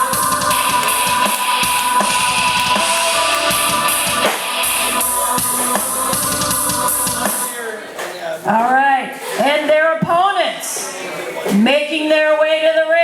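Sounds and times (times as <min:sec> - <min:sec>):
drum kit beat: 0:00.0 - 0:07.9
loud entrance music: 0:00.0 - 0:07.9.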